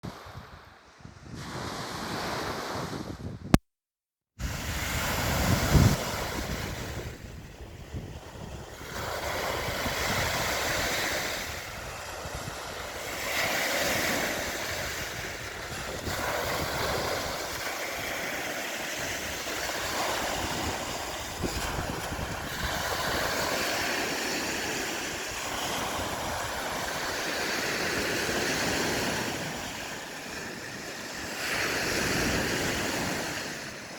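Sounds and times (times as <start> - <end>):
waves washing onto sandy shore: 4.4 - 33.9
wind buffeting microphone: 4.4 - 33.9.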